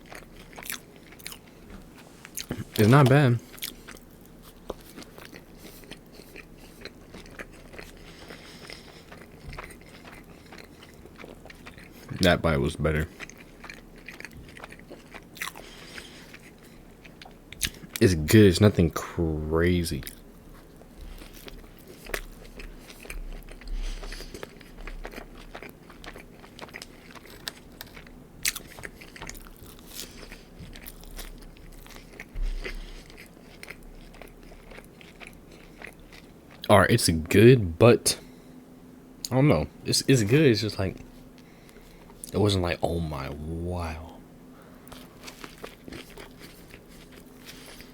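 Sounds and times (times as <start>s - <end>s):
person chewing crunchy food: 0.0s - 18.3s, 20.0s - 36.7s, 41.0s - 47.9s.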